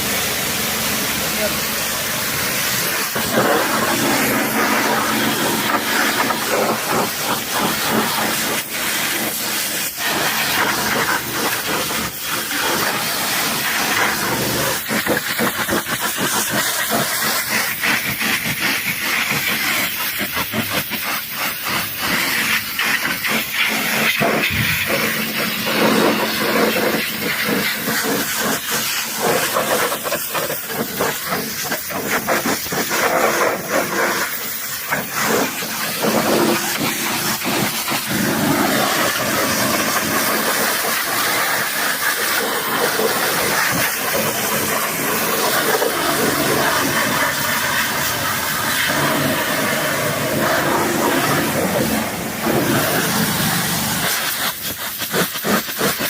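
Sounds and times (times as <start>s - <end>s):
pressure washer spraying water: 0.0s - 56.0s.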